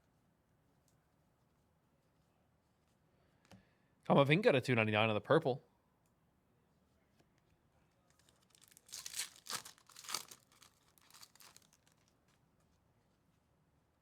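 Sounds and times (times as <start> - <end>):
foil wrapper tearing and crinkling: 8.2 - 12.4.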